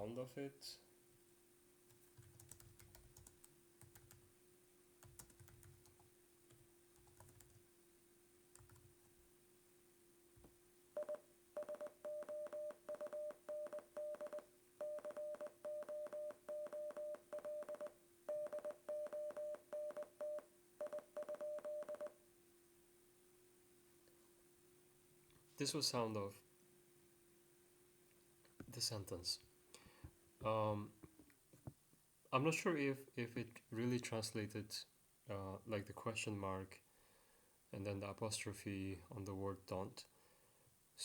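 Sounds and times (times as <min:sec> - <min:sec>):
morse code beeps: 0:11.0 - 0:22.1.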